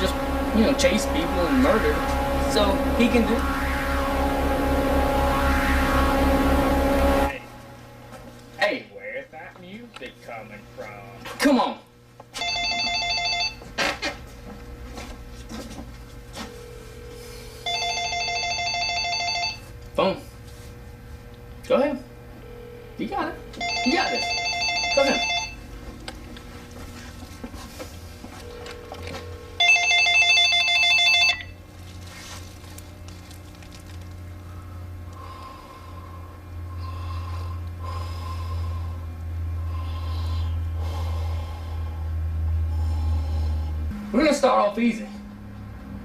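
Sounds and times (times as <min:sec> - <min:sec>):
telephone ringing electronic trill: 0:00.0 - 0:08.1, 0:12.4 - 0:13.6, 0:17.0 - 0:19.7, 0:23.5 - 0:25.6, 0:29.5 - 0:31.6
steady low hum: 0:00.0 - 0:46.0
telephone ringing: 0:12.4 - 0:13.7, 0:17.6 - 0:19.6, 0:23.6 - 0:25.6, 0:28.5 - 0:31.6.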